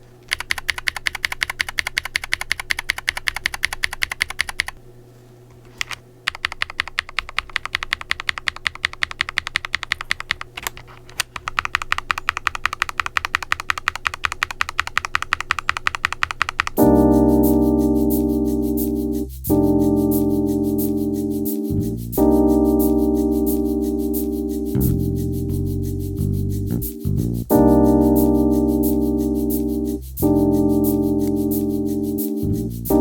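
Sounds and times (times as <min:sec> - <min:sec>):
mechanical keyboard typing: 0:00.3 - 0:04.8, 0:05.8 - 0:17.0.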